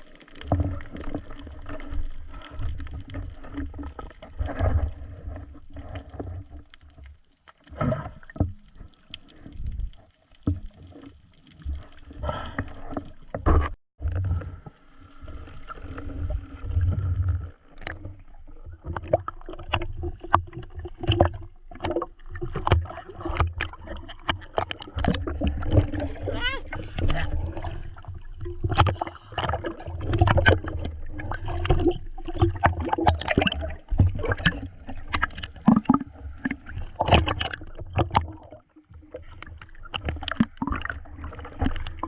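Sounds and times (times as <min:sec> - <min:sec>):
water sloshing and gurgling: 0:00.0 - 0:42.0.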